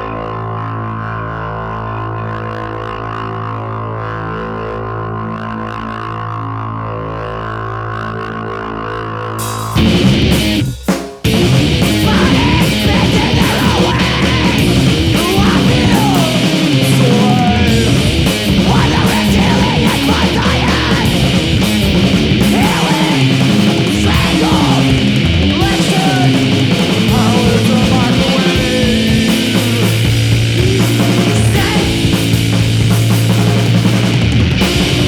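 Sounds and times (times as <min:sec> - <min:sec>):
loud noise rock: 0:09.4 - 0:35.0.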